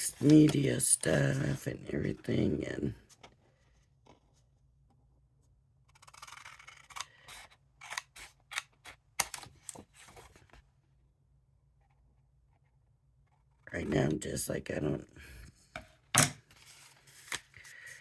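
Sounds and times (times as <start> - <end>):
scissors cutting paper: 5.9 - 9.3.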